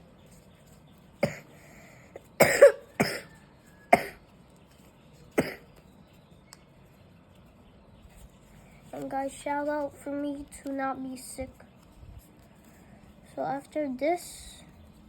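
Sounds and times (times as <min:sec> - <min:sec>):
person coughing: 0:01.2 - 0:01.6, 0:02.2 - 0:04.2, 0:05.4 - 0:05.7.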